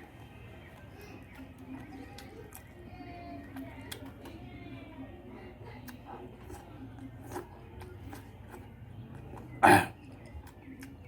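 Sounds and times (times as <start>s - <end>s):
faint chewing and mouth clicks: 0.0s - 4.6s, 5.6s - 11.0s
loud throat gulp: 9.6s - 10.0s.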